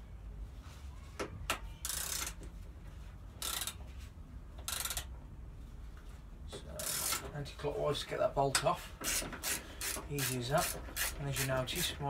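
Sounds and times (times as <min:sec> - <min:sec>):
ratchet spanner clicking: 0:01.8 - 0:02.4, 0:03.4 - 0:03.8, 0:04.6 - 0:05.1, 0:06.8 - 0:07.2.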